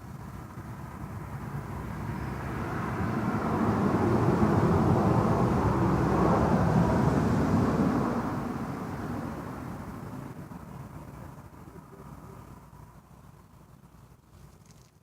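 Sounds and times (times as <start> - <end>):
passing vehicle rumbling: 0.4 - 11.2.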